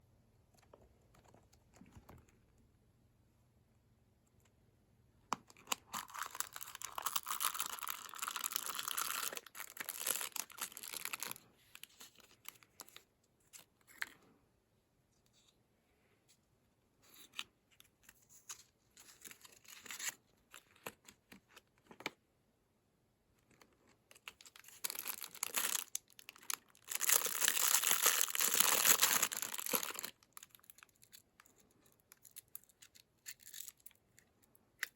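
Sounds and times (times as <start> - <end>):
packaging tearing and crinkling: 5.6 - 11.4, 24.3 - 31.2.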